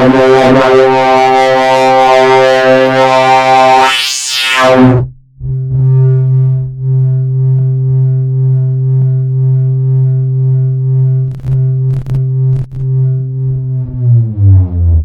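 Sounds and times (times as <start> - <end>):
low buzzy synth drone: 0.0 - 15.0
glitchy clicks: 11.3 - 13.2.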